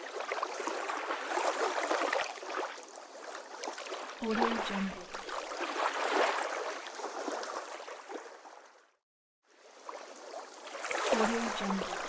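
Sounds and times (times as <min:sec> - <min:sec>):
river water lapping and splashing: 0:00.0 - 0:12.0.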